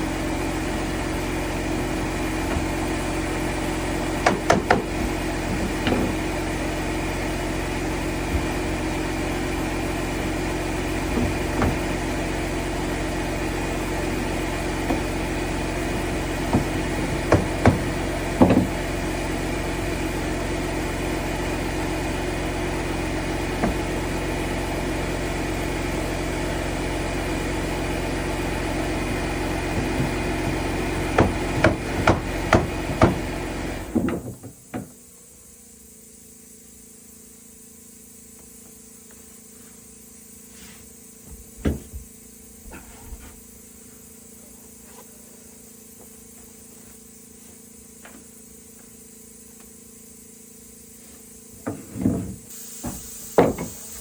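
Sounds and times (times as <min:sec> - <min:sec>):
steady mechanical hum: 0:00.0 - 0:54.0
hammer striking wood: 0:04.0 - 0:06.3, 0:11.1 - 0:12.0, 0:16.0 - 0:19.0, 0:23.6 - 0:24.1, 0:29.7 - 0:34.9, 0:41.6 - 0:42.0, 0:51.6 - 0:53.8.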